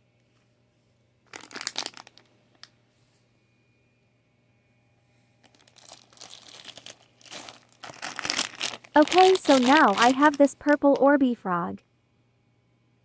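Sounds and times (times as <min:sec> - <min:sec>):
toy packaging crinkling: 0:01.3 - 0:02.3, 0:05.4 - 0:11.3.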